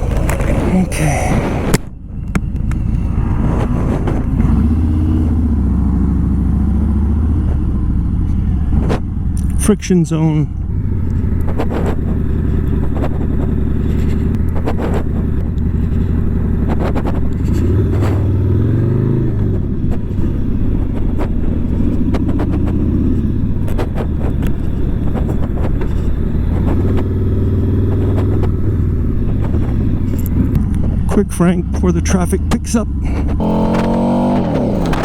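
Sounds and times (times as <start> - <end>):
motorcycle engine revving: 0.0 - 35.0
wind knocking on microphone: 11.2 - 18.5, 19.3 - 31.9.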